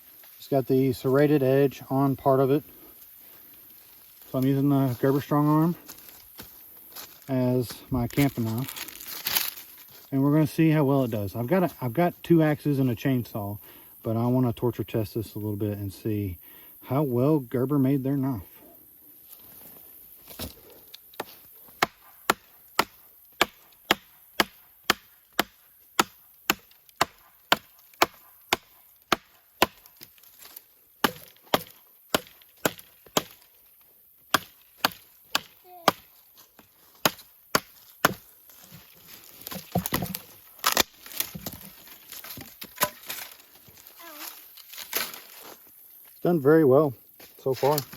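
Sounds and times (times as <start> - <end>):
knife chopping into wood: 21.2 - 30.1, 31.0 - 33.5, 34.3 - 36.2, 37.0 - 38.8, 39.4 - 43.2
wood cracking and splintering: 37.0 - 44.0.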